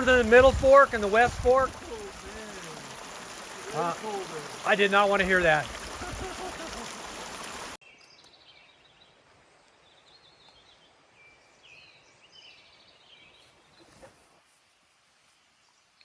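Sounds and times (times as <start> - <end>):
rushing creek water: 0.0 - 7.8
faint birdsong: 7.8 - 14.4.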